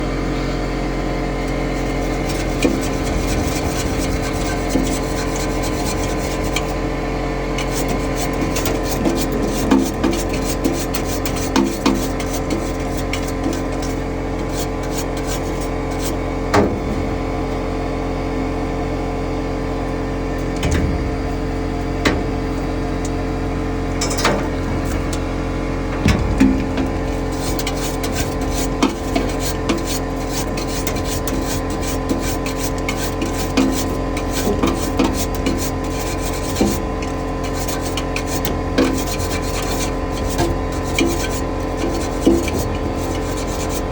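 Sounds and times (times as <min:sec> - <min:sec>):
steady machine hum: 0:00.0 - 0:43.9
hand tools knocking and scraping: 0:01.8 - 0:06.8, 0:07.6 - 0:16.9, 0:24.0 - 0:25.3, 0:25.9 - 0:43.9.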